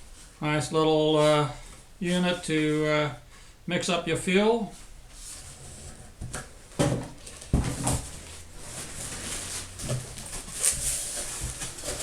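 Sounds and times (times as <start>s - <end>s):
cardboard packaging rustling: 7.2s - 12.0s.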